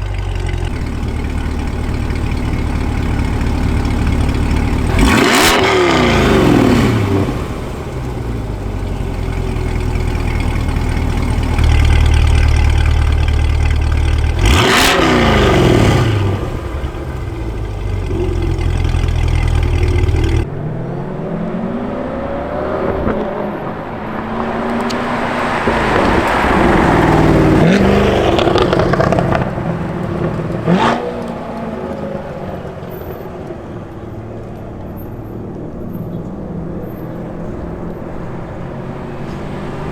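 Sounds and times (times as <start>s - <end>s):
engine revving: 0.0s - 32.4s, 37.3s - 39.9s
car engine accelerating past: 0.7s - 8.6s, 18.0s - 33.3s.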